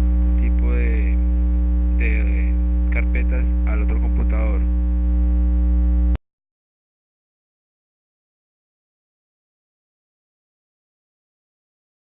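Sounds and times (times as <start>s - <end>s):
electrical mains hum: 0.0s - 6.2s.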